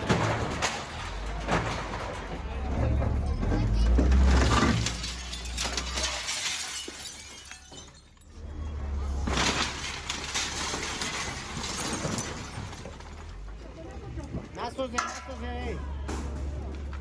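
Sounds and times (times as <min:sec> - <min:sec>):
debris crashing and shattering: 0:00.0 - 0:17.0.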